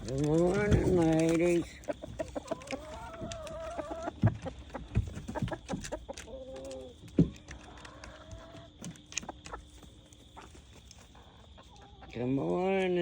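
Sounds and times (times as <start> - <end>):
sharp knocks and thumps: 0.0 - 1.6, 4.0 - 6.2, 7.0 - 7.7
chickens clucking: 0.0 - 13.0.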